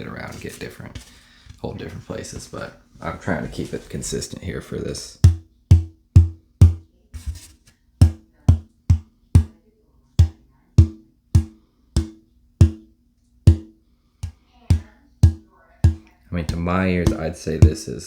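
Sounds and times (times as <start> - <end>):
tapping on wooden guitar top: 5.2 - 9.6, 10.2 - 12.9, 13.5 - 17.9.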